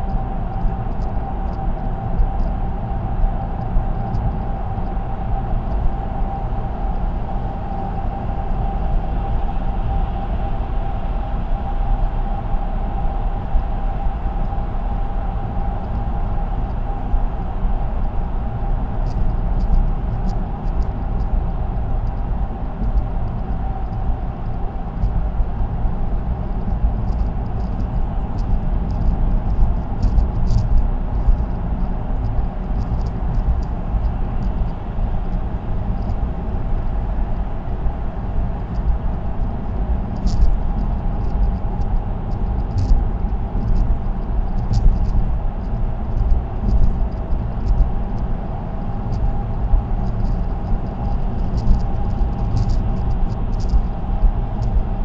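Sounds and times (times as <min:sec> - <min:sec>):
faint steady whine: 0:00.0 - 0:55.0
low rumble: 0:00.0 - 0:55.0
light ticks: 0:28.4 - 0:31.5, 0:40.2 - 0:43.0, 0:49.1 - 0:53.9.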